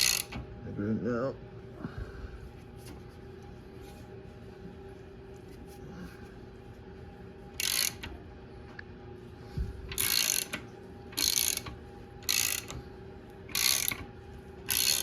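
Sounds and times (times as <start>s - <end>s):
ratchet wrench clicking: 0.0s - 0.4s, 7.6s - 8.1s, 9.9s - 12.8s, 13.5s - 14.0s, 14.7s - 15.0s.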